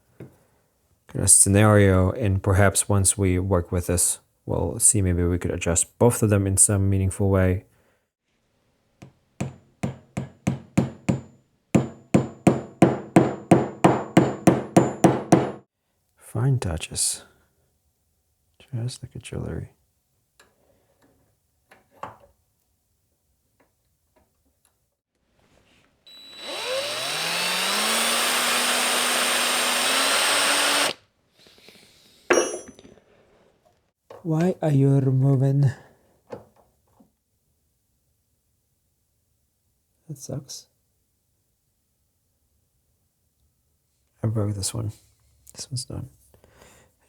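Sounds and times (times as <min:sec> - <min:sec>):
hammer tapping metal: 0:09.4 - 0:15.6
power tool motor whine: 0:26.1 - 0:31.0.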